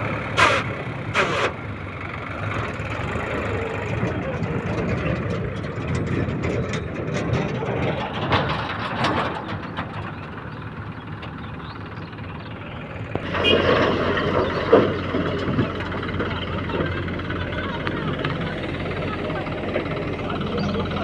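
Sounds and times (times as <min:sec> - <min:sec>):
diesel engine running: 0:00.0 - 0:21.0
metal knocks and clanks: 0:03.9 - 0:10.4, 0:13.1 - 0:17.0.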